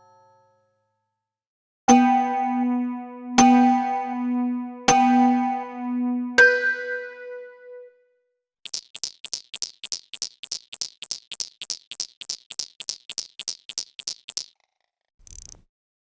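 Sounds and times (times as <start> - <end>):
clock ticking: 8.7 - 14.5.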